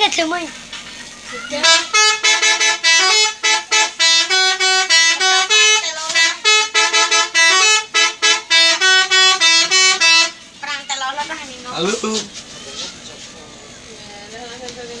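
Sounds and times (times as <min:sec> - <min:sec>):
musical air horn tune: 0:01.6 - 0:10.4.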